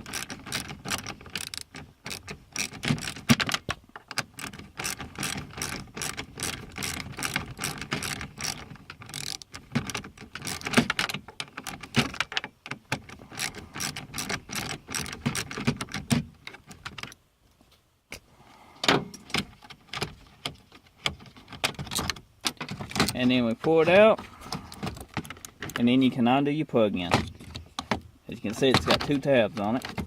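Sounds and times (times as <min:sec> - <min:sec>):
hand ratchet clicking: 0:00.0 - 0:12.4, 0:13.0 - 0:16.1.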